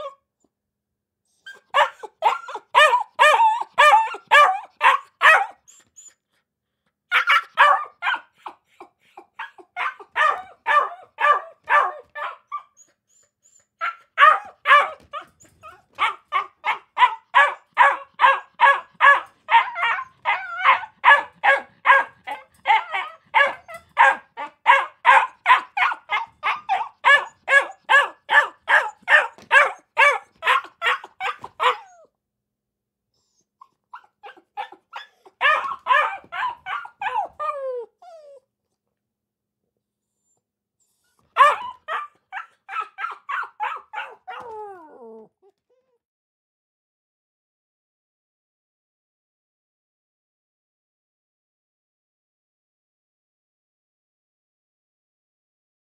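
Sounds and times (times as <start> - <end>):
puppies yapping: 1.5 - 6.2, 7.1 - 8.6, 9.2 - 13.0, 13.8 - 32.1, 34.0 - 38.4, 41.1 - 45.2.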